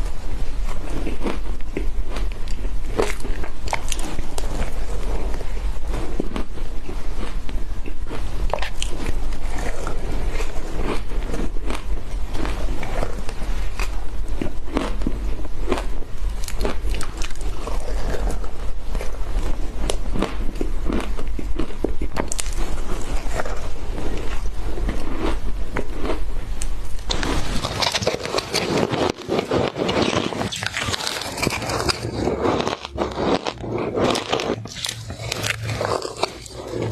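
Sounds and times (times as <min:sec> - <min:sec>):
crunching shaved ice: 0:00.7 - 0:26.2, 0:27.0 - 0:36.9.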